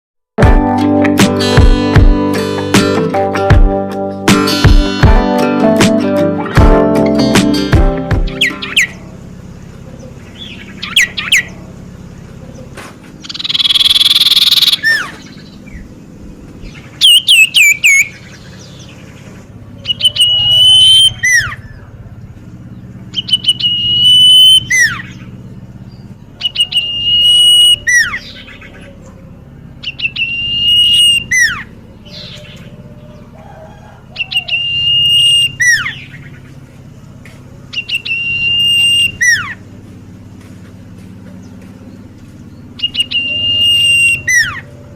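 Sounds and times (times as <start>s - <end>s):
bird whistling song: 8.2s - 9.0s, 10.0s - 11.6s, 12.6s - 15.9s, 16.6s - 19.2s, 19.8s - 21.9s, 22.7s - 29.2s, 29.8s - 33.2s, 34.2s - 36.5s, 37.7s - 39.6s, 41.4s - 44.9s
harsh rasping bird call: 12.6s - 15.9s, 19.8s - 22.1s, 26.2s - 36.6s, 37.7s - 39.7s, 42.6s - 44.9s.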